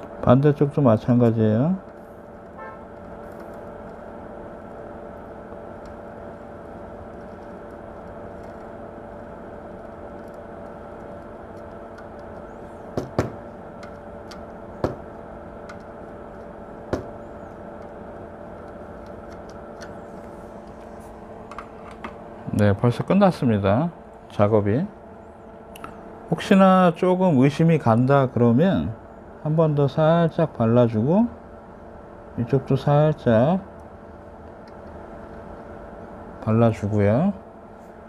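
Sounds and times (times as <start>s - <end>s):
steady machine hum: 0.0s - 38.0s.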